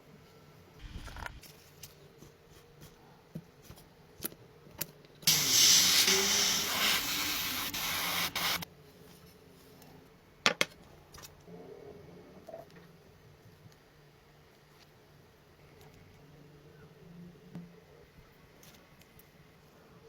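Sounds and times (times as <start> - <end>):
spray hissing: 5.3 - 8.6.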